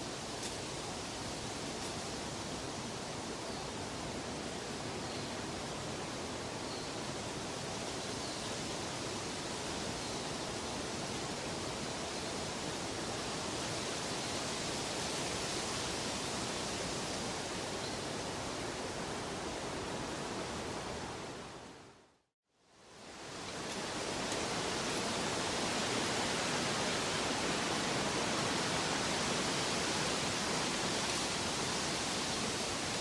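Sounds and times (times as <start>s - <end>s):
steady rushing nature ambience: 0.0s - 33.0s.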